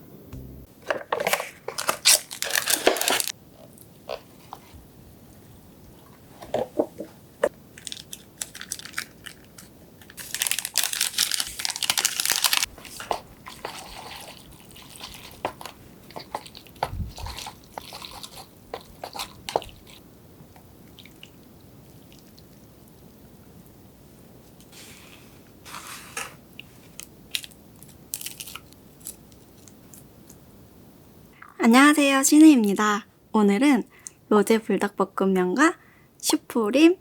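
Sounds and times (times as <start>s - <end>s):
crunching and chewing: 7.8s - 20.0s.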